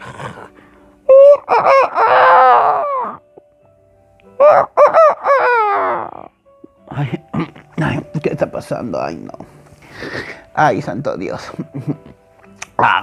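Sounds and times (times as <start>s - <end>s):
rooster crowing: 4.4s - 6.3s.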